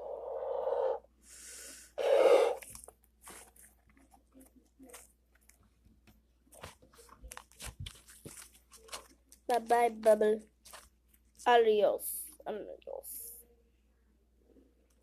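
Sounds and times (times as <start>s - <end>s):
breathy puffs of air: 1.2s - 2.6s.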